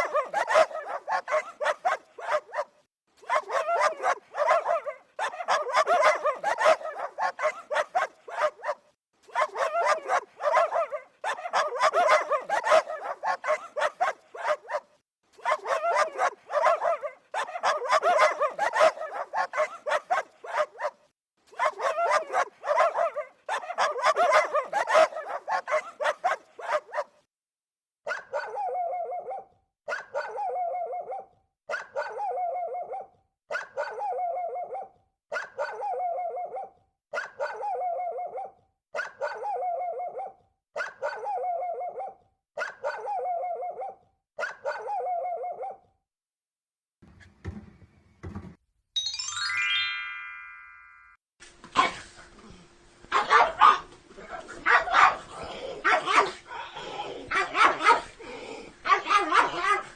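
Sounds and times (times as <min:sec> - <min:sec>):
dog barking: 0:00.0 - 0:27.2, 0:28.0 - 0:45.9, 0:51.8 - 0:52.2, 0:53.1 - 0:56.5, 0:57.2 - 0:59.9.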